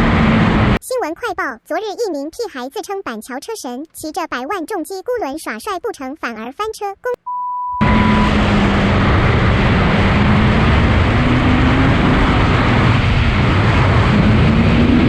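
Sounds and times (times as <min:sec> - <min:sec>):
short steady beep: 0:07.2 - 0:08.3
wind noise: 0:07.8 - 0:15.0.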